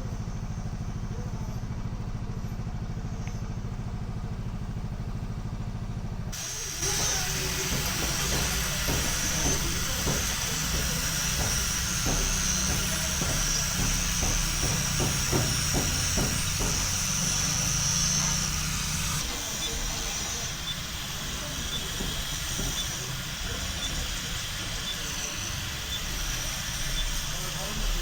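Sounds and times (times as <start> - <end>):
high even hiss: 6.4 - 28.0.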